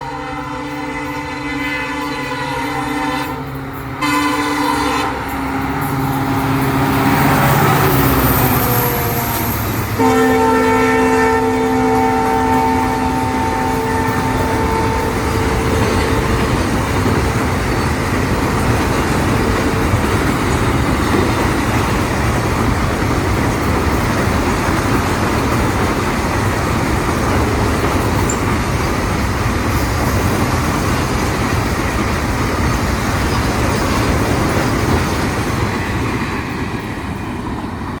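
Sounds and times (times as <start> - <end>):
train horn: 0.0 - 17.4
train wagons rumbling past: 0.0 - 38.0.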